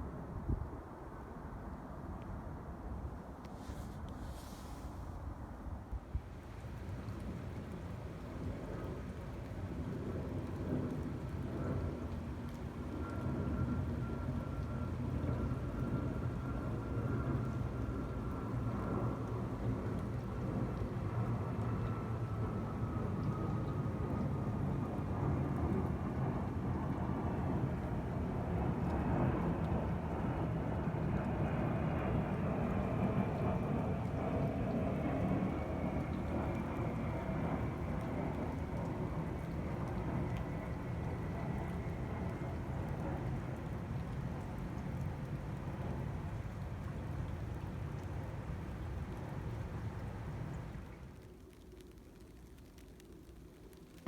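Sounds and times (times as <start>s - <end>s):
jet engines rumbling: 6.5s - 51.1s
faint high whine: 7.0s - 27.9s.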